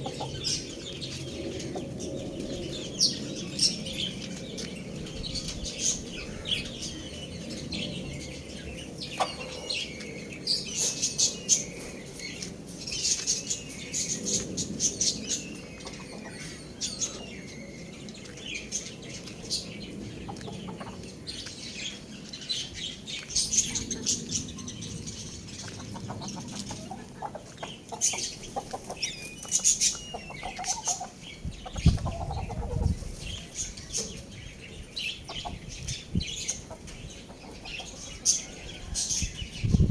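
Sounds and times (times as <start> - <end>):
chickens clucking: 0.0 - 5.2, 9.0 - 12.4, 13.0 - 17.6, 18.3 - 22.0, 25.0 - 39.8
small birds chirping: 0.0 - 39.9.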